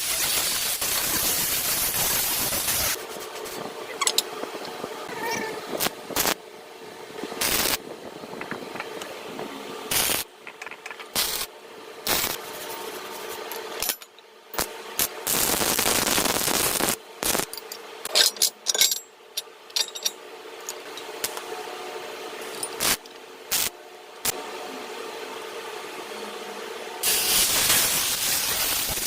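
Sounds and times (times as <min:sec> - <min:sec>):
hissing welding burst: 0:00.0 - 0:03.6, 0:05.8 - 0:06.4, 0:07.4 - 0:07.8, 0:09.9 - 0:10.3, 0:11.1 - 0:11.5, 0:12.1 - 0:12.5, 0:14.6 - 0:17.5, 0:22.8 - 0:23.7, 0:27.0 - 0:29.0
sharp metal clinks and knocks: 0:17.5 - 0:21.1, 0:22.4 - 0:22.8.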